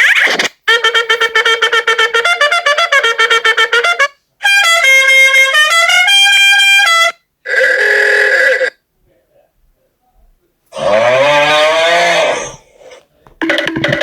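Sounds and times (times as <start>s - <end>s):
trumpet staccato notes: 0.6s - 7.9s
trumpet held notes: 0.7s - 8.7s.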